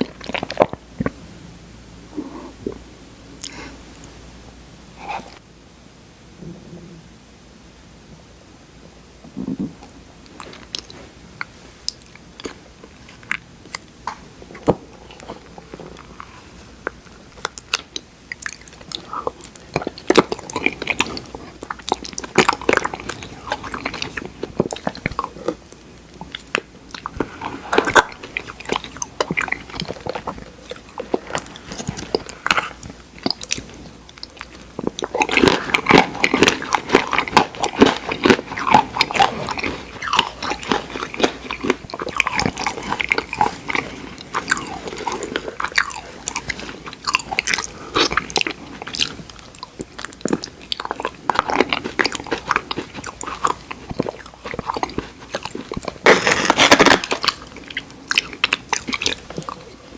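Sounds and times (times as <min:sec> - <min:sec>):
eating ice cream crunching: 0:00.0 - 0:01.3, 0:16.9 - 0:59.9
mouth clicks: 0:02.0 - 0:04.2.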